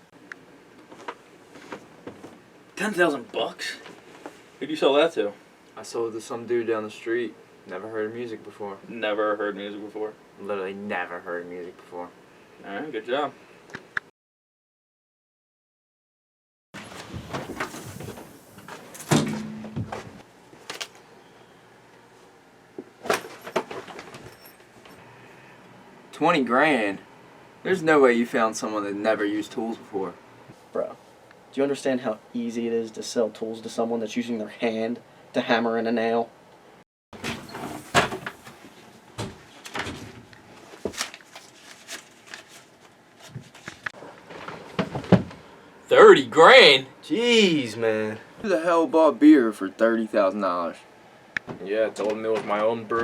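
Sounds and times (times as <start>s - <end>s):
faint room noise: 0.0s - 14.1s, 16.8s - 53.0s
clunks and knocks: 19.0s - 20.2s.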